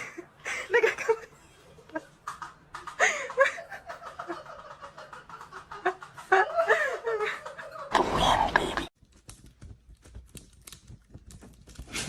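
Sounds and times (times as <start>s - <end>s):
person laughing: 1.9s - 8.9s.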